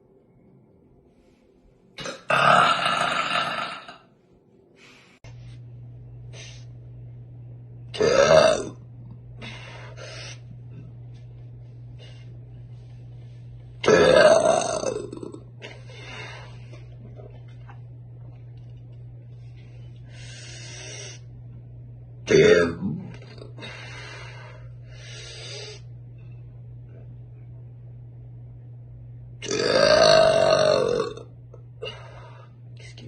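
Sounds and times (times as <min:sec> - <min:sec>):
woman burping: 0:02.0 - 0:04.1, 0:08.0 - 0:08.8, 0:13.8 - 0:15.8, 0:29.4 - 0:31.3.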